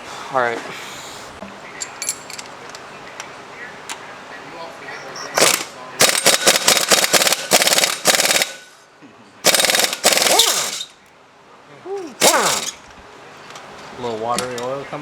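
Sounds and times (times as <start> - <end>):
impact wrench hammering: 5.4 - 8.8, 9.5 - 11.0, 12.2 - 12.8.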